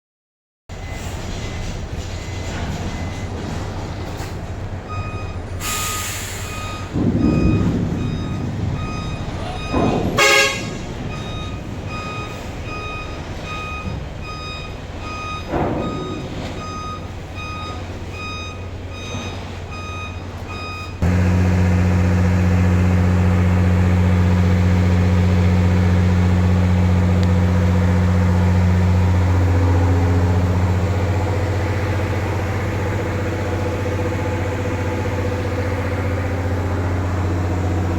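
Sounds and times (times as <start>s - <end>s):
reversing alarm beeping: 0.7s - 4.3s, 4.9s - 37.9s
vehicle engine running: 21.0s - 37.9s.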